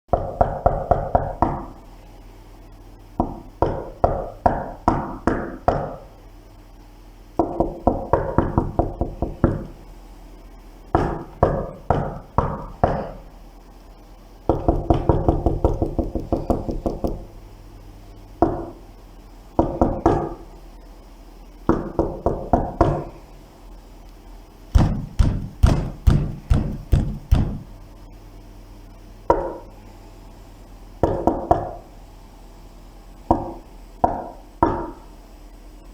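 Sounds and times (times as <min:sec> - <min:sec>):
knocking on a door: 0:00.1 - 0:01.7, 0:03.2 - 0:06.0, 0:07.4 - 0:09.7, 0:11.0 - 0:13.1, 0:14.5 - 0:17.2, 0:19.6 - 0:20.4, 0:21.7 - 0:23.1, 0:24.8 - 0:27.7, 0:31.0 - 0:31.8
faint low hum: 0:00.1 - 0:35.9.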